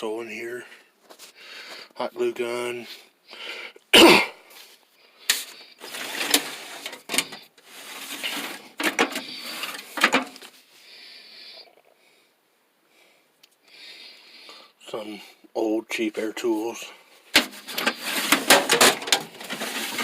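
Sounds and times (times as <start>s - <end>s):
metal drawers rolling and rattling: 5.8s - 10.3s, 17.4s - 20.0s.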